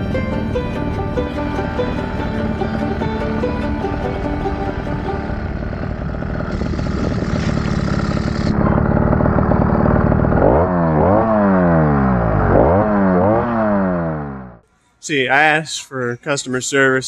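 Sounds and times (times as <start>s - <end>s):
two-stroke engine revving: 0.0s - 14.6s.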